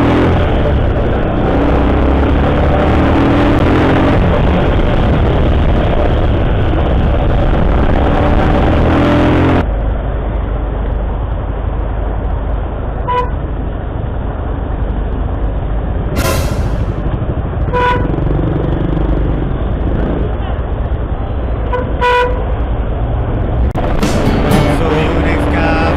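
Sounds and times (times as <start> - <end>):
vehicle engine revving: 0.0 - 9.6, 16.2 - 20.6, 21.6 - 25.9
heavy wind noise: 0.0 - 25.9
road traffic noise: 0.0 - 25.9
car horn toots: 13.1 - 13.4, 17.7 - 18.2, 21.7 - 22.5.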